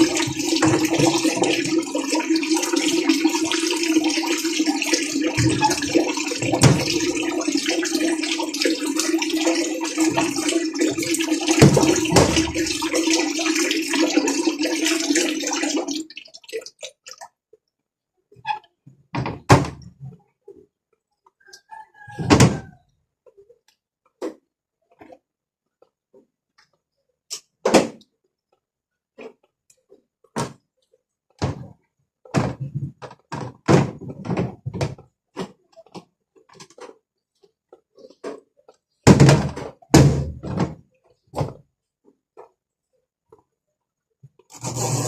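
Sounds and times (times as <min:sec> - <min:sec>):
washing machine motor hum: 0:00.0 - 0:16.0
water sloshing: 0:00.0 - 0:17.2.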